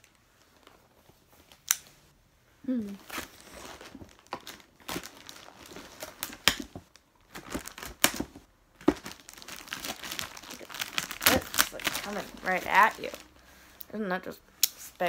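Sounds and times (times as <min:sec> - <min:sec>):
packaging crinkling and tearing: 0:03.0 - 0:13.4.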